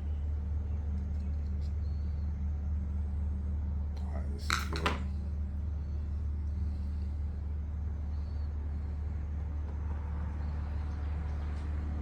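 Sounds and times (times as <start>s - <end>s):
low mechanical hum: 0.0s - 12.0s
handling small parts: 4.4s - 5.1s.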